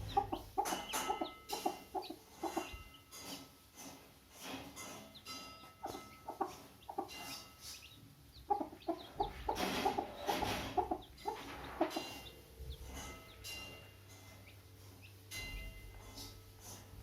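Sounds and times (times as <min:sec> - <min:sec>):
hen clucking: 0:00.0 - 0:03.0, 0:05.1 - 0:13.5
high chick peeps: 0:00.0 - 0:17.0.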